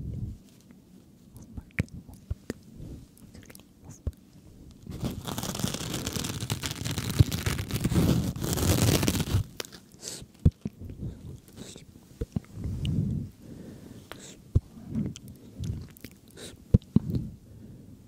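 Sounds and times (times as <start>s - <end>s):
sponge squeezed crackling squish: 4.9s - 9.7s.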